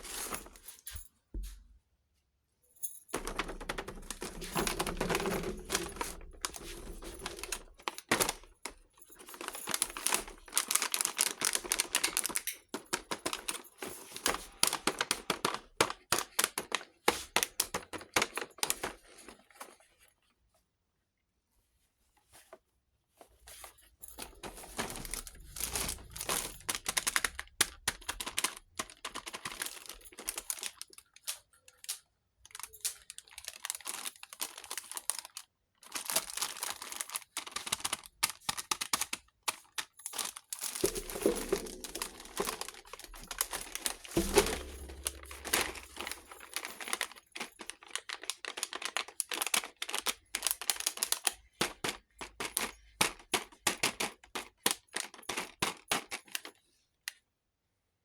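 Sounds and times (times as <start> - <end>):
plastic packaging crinkling: 3.2 - 19.1, 24.2 - 53.1.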